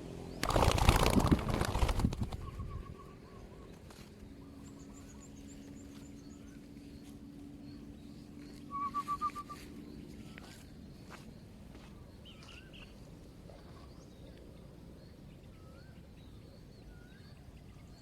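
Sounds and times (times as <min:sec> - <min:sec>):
bird trill: 0:07.6 - 0:11.2.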